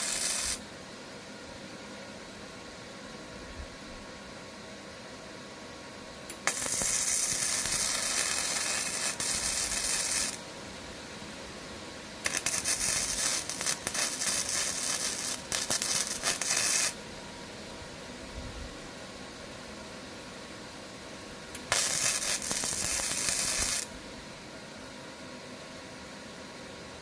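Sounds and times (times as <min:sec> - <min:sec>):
arc welder crackling: 0:00.0 - 0:00.7, 0:06.3 - 0:10.4, 0:12.2 - 0:17.0, 0:21.5 - 0:24.0.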